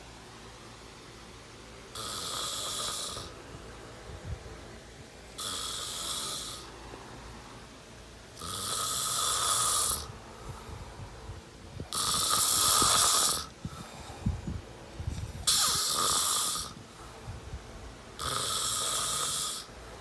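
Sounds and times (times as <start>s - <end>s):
person snoring loudly: 1.9s - 3.4s, 5.4s - 6.7s, 8.4s - 10.1s, 11.9s - 13.9s, 15.4s - 16.8s, 18.2s - 19.7s
quiet breathing: 8.9s - 12.1s, 13.4s - 15.8s, 16.5s - 17.6s.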